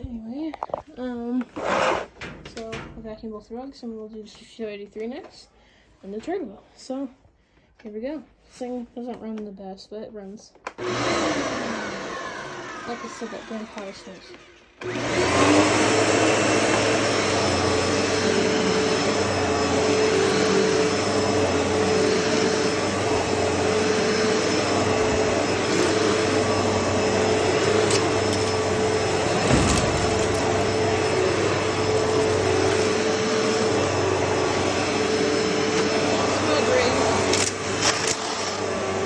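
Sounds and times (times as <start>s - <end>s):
vacuum cleaner running: 10.8s - 39.0s.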